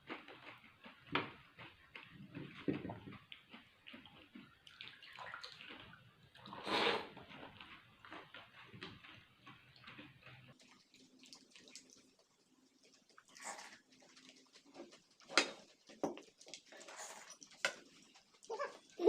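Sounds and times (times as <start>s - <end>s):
people eating crunchy snacks: 0.0s - 2.4s
slurp: 4.5s - 7.6s, 13.1s - 15.8s.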